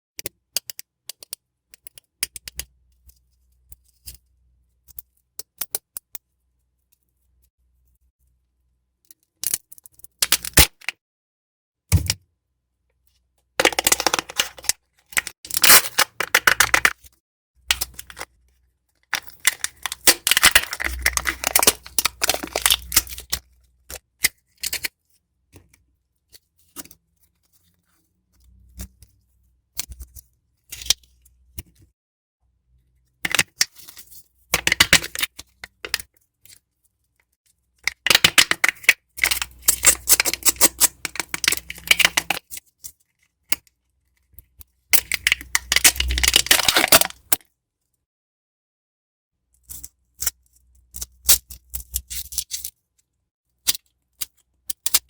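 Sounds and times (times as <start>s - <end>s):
foil wrapper crinkling and tearing: 13.6s - 17.0s, 19.1s - 23.4s, 37.9s - 42.6s, 45.0s - 47.4s.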